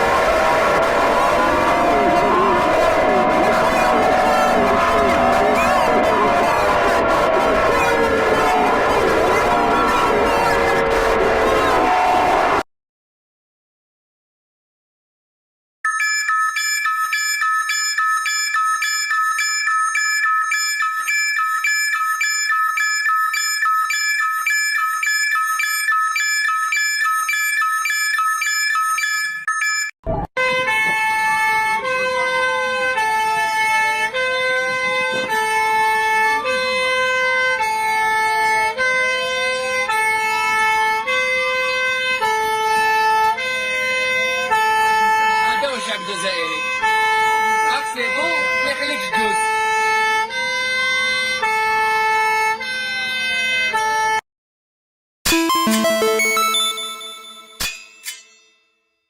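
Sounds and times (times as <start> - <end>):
wailing siren tone: 0.0 - 12.6, 15.9 - 54.2, 55.3 - 57.6
pulsing high alarm beeps: 15.9 - 30.0, 45.7 - 47.0, 55.3 - 57.8
stepped alarm tones: 15.9 - 30.3, 55.3 - 57.8.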